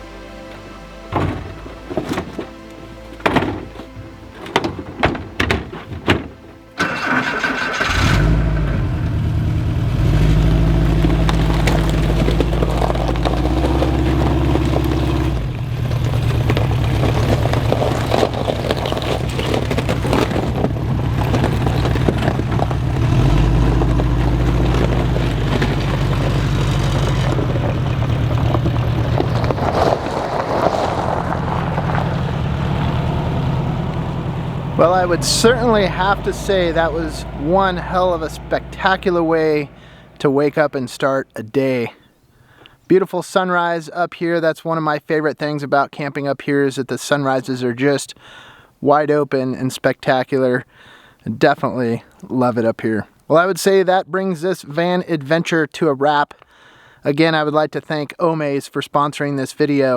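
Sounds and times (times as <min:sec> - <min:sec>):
vehicle engine running: 0:00.0 - 0:41.0.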